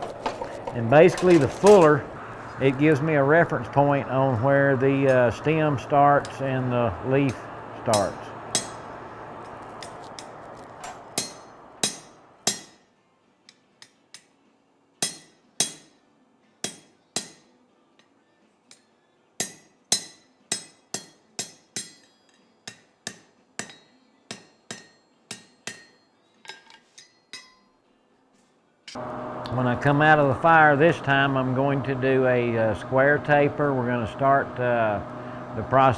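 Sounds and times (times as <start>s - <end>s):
rushing noise: 0.0s - 5.8s
hammer striking steel on anvil: 7.2s - 8.9s, 10.9s - 12.9s, 13.5s - 14.4s, 15.0s - 16.0s, 16.6s - 18.1s, 18.7s - 27.8s.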